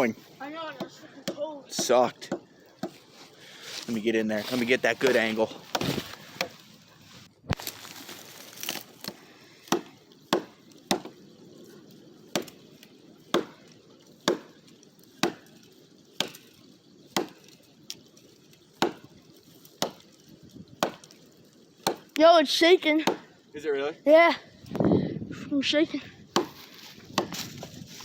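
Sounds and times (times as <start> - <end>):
hammer striking tree trunk: 0.8 - 3.0, 8.6 - 11.2, 12.3 - 12.6, 13.3 - 13.6, 14.2 - 14.5, 15.2 - 15.5, 16.2 - 16.5, 17.1 - 17.4, 18.8 - 19.1, 19.8 - 20.0, 20.8 - 21.1, 21.8 - 22.1, 23.0 - 23.3, 26.3 - 27.4.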